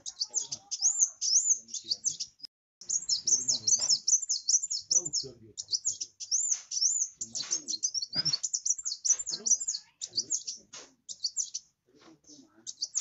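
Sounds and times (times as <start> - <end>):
sunbird singing: 0.0 - 13.0.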